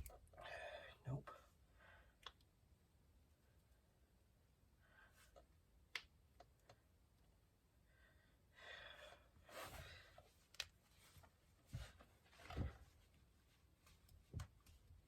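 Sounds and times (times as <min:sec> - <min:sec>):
soft breathing: 0:00.3 - 0:02.2, 0:04.8 - 0:05.5, 0:07.8 - 0:13.0
knuckles cracking: 0:02.2 - 0:02.5, 0:05.3 - 0:06.8.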